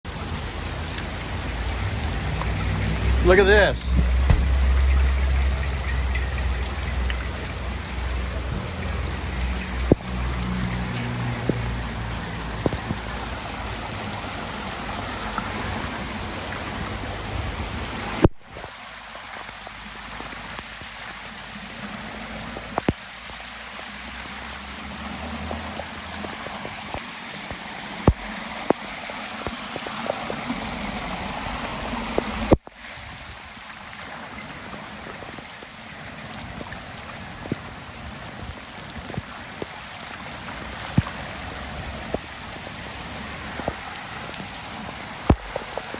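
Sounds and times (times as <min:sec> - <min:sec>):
floodwater running: 0:00.1 - 0:45.9
hard rain falling: 0:00.1 - 0:45.9
splashing drops: 0:02.0 - 0:07.2.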